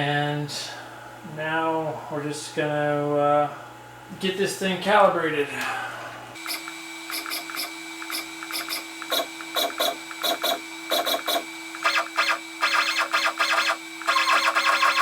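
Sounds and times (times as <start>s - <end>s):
steady hum: 0.0s - 15.0s
stepper motors buzzing: 6.4s - 15.0s.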